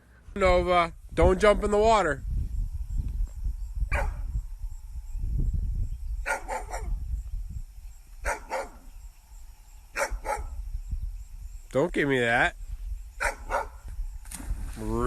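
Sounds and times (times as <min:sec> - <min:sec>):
dog barking: 0:03.9 - 0:04.2, 0:06.2 - 0:07.0, 0:08.2 - 0:08.9, 0:10.0 - 0:10.6, 0:13.2 - 0:13.8.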